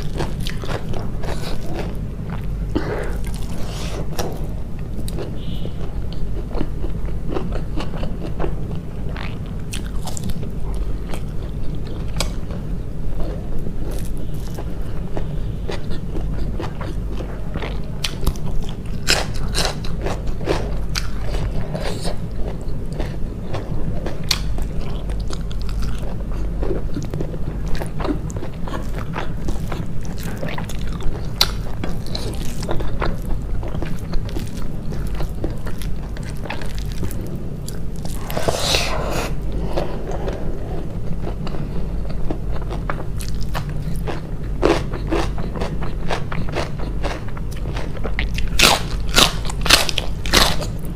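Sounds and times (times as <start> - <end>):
steady low hum: 0.0 - 50.9
person biting and chewing: 13.2 - 50.9.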